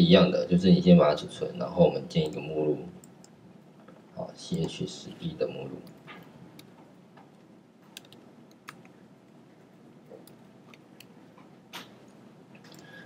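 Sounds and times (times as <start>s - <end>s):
keyboard and mouse clicks: 5.8s - 9.0s, 10.0s - 12.9s.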